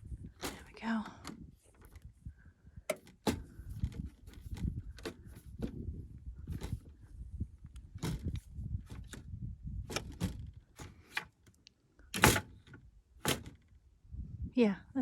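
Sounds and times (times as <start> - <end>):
door latch clicks and knocks: 12.2 - 13.6.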